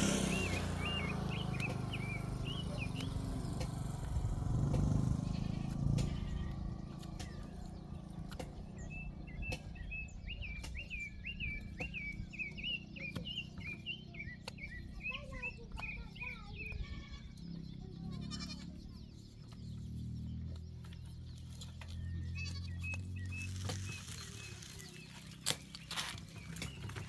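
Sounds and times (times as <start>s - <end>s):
goats bleating: 5.0s - 6.7s, 16.7s - 17.4s, 18.1s - 18.8s, 22.3s - 23.0s.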